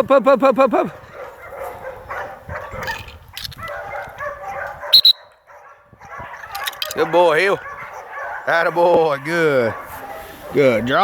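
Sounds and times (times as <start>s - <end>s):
young dog whining and yipping: 1.2s - 10.7s
shrill high-pitched chirps: 5.0s - 5.4s.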